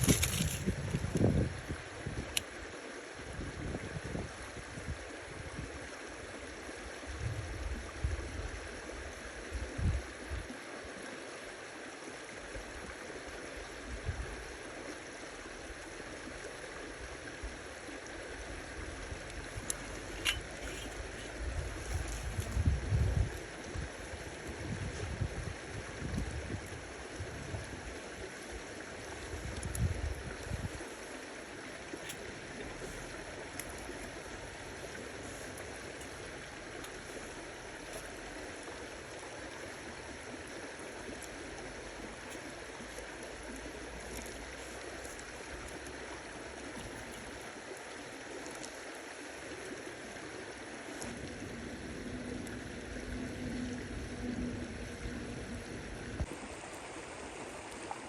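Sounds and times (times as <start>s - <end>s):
running water: 0.0s - 58.0s
faint ticks: 32.0s - 38.3s, 42.2s - 46.0s.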